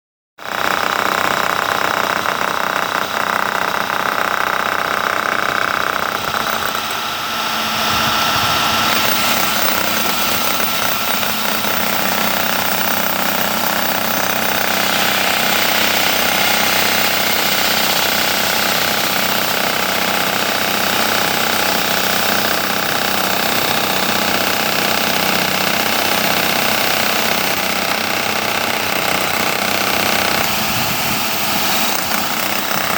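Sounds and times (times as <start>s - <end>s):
wall saw grinding concrete: 0.4s - 32.9s
mechanical drone: 7.1s - 11.0s.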